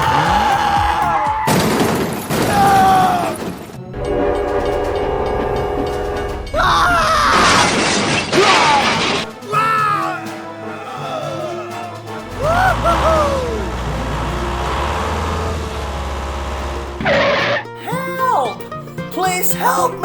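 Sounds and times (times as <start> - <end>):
crashing shattering noise: 1.5 - 3.8, 6.9 - 9.4
noisy crash with sliding tones: 1.5 - 9.4, 11.8 - 17.7
steady horn-like tone: 4.0 - 7.1
squealing tone: 4.0 - 17.7.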